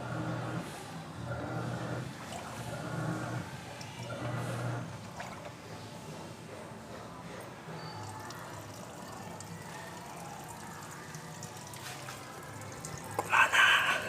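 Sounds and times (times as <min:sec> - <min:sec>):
washing machine water noise: 0:00.0 - 0:14.0.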